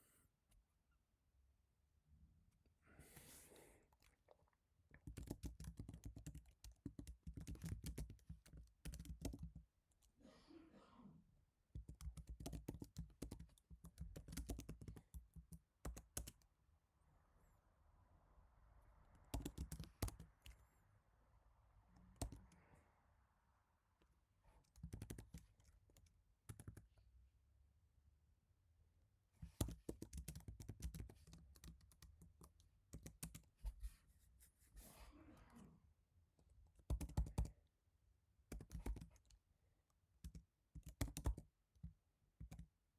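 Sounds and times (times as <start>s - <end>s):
soft keyboard keystrokes: 5.0s - 9.6s, 11.8s - 16.5s, 19.3s - 20.6s, 22.1s - 22.6s, 24.6s - 27.0s, 29.5s - 33.6s, 36.8s - 37.6s, 38.5s - 39.4s, 40.2s - 42.7s.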